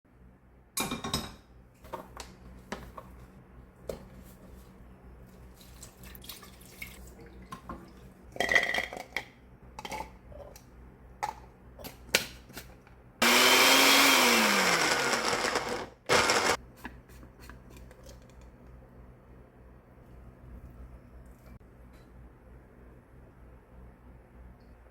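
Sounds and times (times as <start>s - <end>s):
electric blender running: 13.2s - 16.6s.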